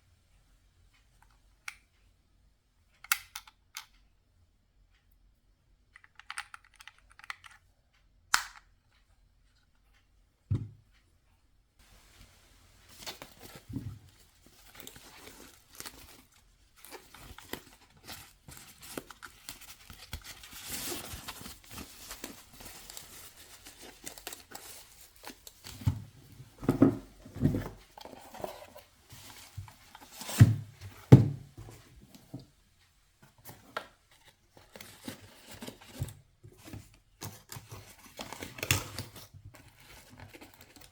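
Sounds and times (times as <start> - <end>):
dull knocks of box handling: 30.3 - 31.8.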